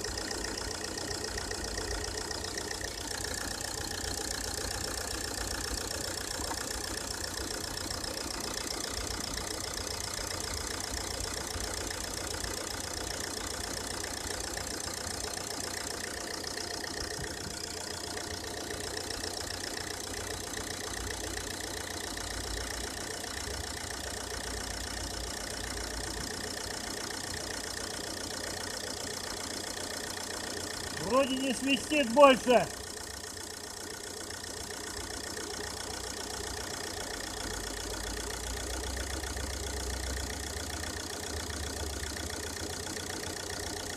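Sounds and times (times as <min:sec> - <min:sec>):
car engine idling: 0:00.0 - 0:43.9
drive belt running: 0:00.0 - 0:43.9.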